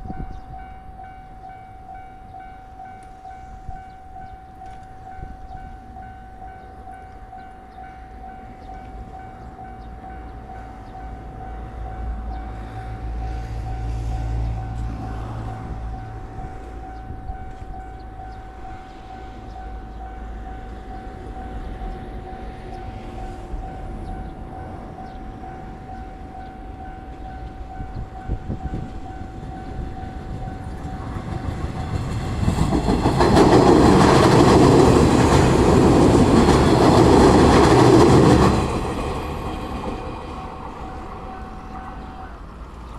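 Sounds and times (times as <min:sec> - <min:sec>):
level crossing warning bell: 0:00.0 - 0:32.3, 0:39.0 - 0:42.8
electric train passing: 0:00.0 - 0:42.9
wheels clattering over rail joints: 0:29.4 - 0:41.0.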